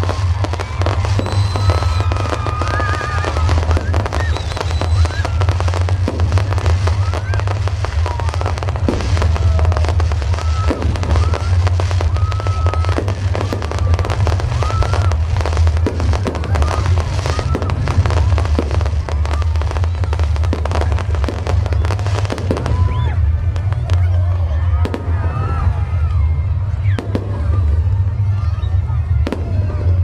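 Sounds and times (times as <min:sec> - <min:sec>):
firework whistles: 0:00.0 - 0:24.0
fireworks crackling and popping: 0:00.0 - 0:30.0
low rumble: 0:00.0 - 0:30.0.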